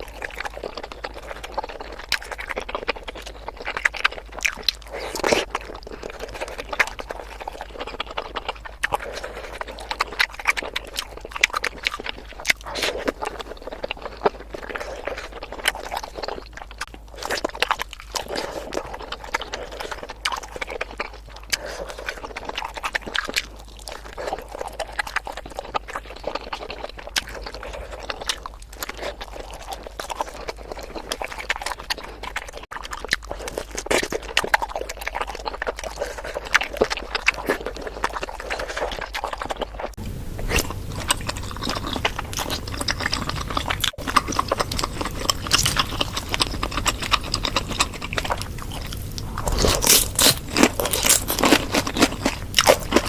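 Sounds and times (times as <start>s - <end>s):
chewing with wet mouth clicks: 0.0s - 53.0s
steady low hum: 40.0s - 53.0s.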